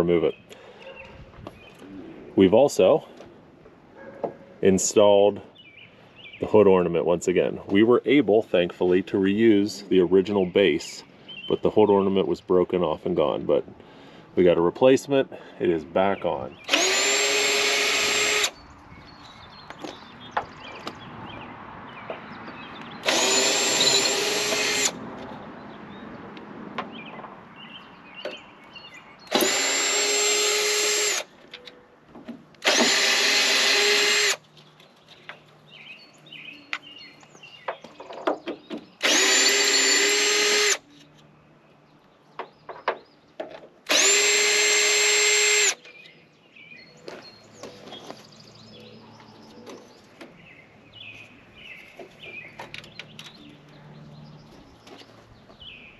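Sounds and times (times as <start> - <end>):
power drill motor whine: 16.6 - 18.6, 23.0 - 24.9, 29.3 - 31.3, 32.6 - 34.4, 39.0 - 40.8, 43.9 - 45.8.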